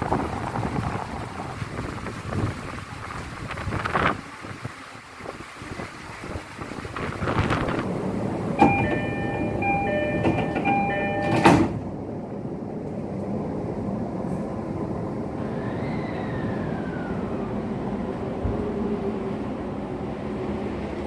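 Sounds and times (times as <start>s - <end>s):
train electronic chime: 8.6s - 11.8s.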